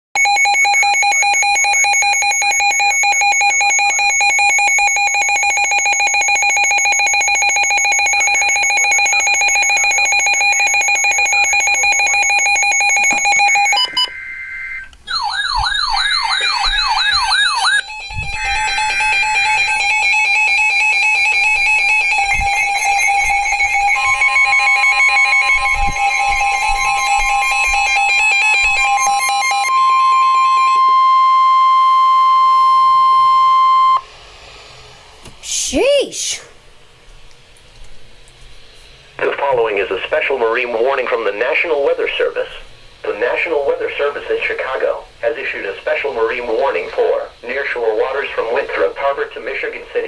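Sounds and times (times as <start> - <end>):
steady alert tones: 0.2 - 30.9
warbling alert tone: 7.4 - 30.0.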